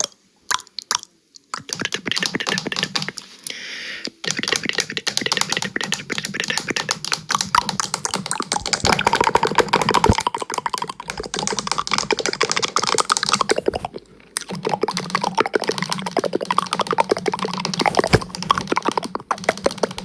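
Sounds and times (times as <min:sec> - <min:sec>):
rapid clicking and tapping: 0:01.6 - 0:03.2, 0:04.2 - 0:20.0.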